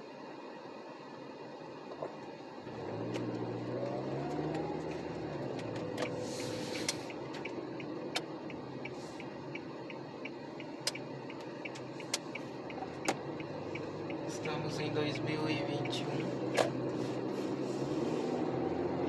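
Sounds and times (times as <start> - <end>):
vehicle engine hum and road noise: 0.0 - 19.0
short hiss: 6.1 - 7.2.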